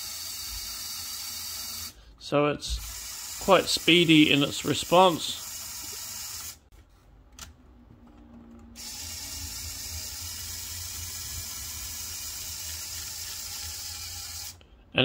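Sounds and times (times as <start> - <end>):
toy motor whirring: 0.0 - 2.0, 2.7 - 6.6, 8.8 - 14.6.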